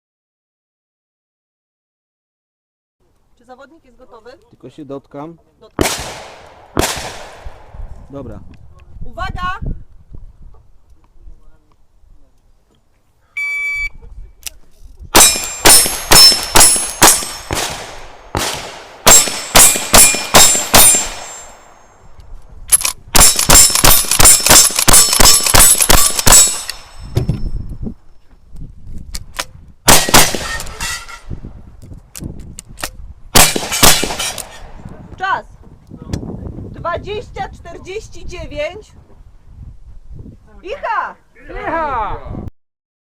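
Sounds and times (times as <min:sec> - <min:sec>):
rapid gunshots: 0:05.8 - 0:07.5, 0:15.2 - 0:21.4, 0:23.2 - 0:26.9, 0:29.9 - 0:30.6, 0:33.4 - 0:34.6
bullets clanging on steel targets: 0:15.2 - 0:17.8, 0:18.5 - 0:21.8, 0:22.7 - 0:27.5, 0:29.9 - 0:31.3, 0:33.4 - 0:34.5.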